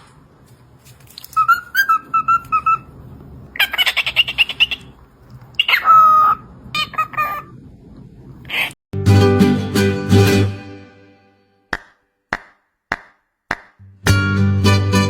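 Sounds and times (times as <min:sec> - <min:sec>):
parrot rattling squawk: 0:01.2 - 0:02.9, 0:03.6 - 0:04.9, 0:05.6 - 0:07.5
parrot whistling: 0:01.4 - 0:02.9, 0:05.6 - 0:07.5.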